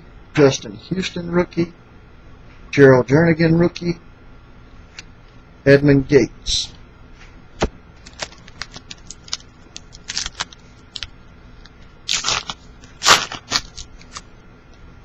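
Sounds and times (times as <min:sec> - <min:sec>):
foil wrapper crinkling: 0:08.0 - 0:11.1, 0:12.0 - 0:14.3.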